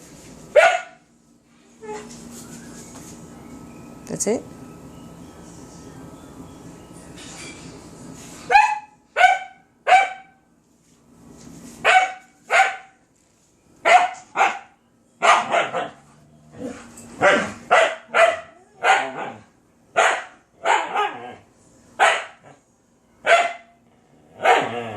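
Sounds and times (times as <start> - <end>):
dog barking: 0.6 - 1.0, 8.5 - 10.4, 11.8 - 13.0, 13.8 - 16.0, 17.2 - 21.3, 22.0 - 22.6, 23.2 - 23.8, 24.4 - 24.8.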